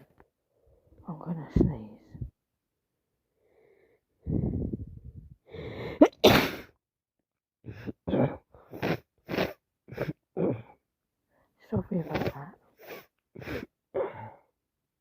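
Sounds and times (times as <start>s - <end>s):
breathy in-breaths: 5.4s - 6.0s
woman sneezing: 6.0s - 6.7s.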